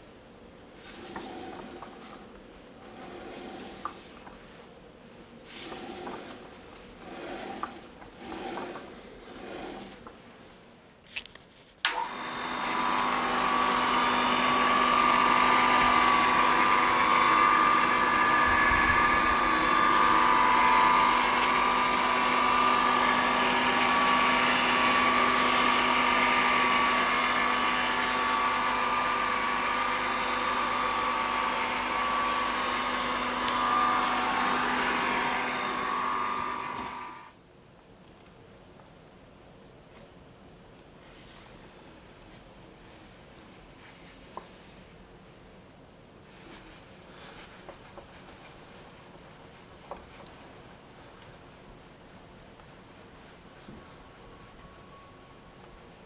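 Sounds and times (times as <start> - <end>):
surface grinder motor hum and whine: 12.0 - 37.3.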